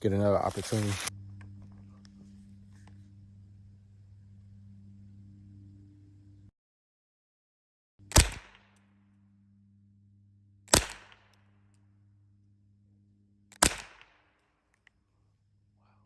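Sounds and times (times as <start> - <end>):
gunshots: 8.1 - 8.7, 10.7 - 11.4, 13.5 - 14.3.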